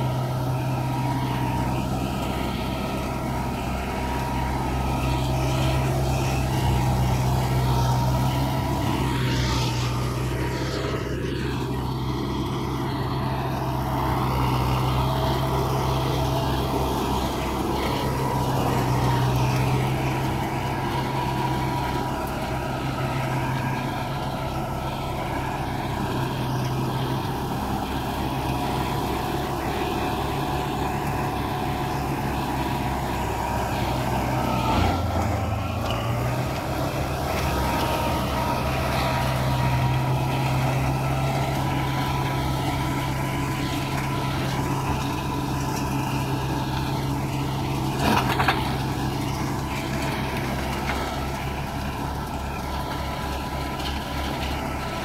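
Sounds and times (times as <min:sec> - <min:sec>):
thin steady whine: 0:00.0 - 0:55.0
tractor diesel engine running: 0:00.0 - 0:55.0.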